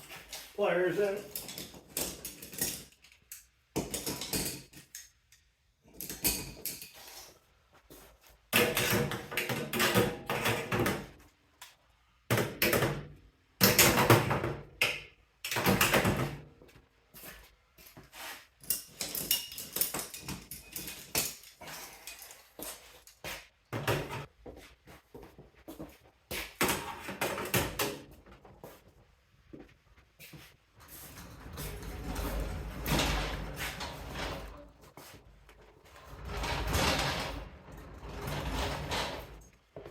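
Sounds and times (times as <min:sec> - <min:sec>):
metal tools clattering on shelving: 0:00.1 - 0:05.1, 0:05.9 - 0:07.2, 0:18.6 - 0:23.2.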